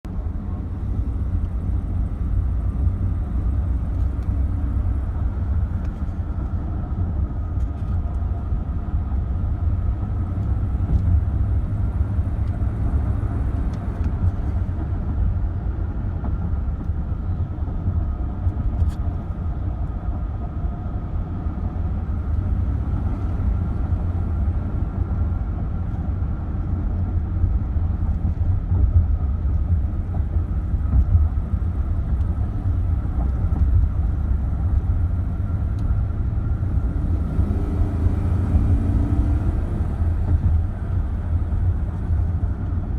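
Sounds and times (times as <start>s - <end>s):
engine and road rumble: 0.0s - 42.9s.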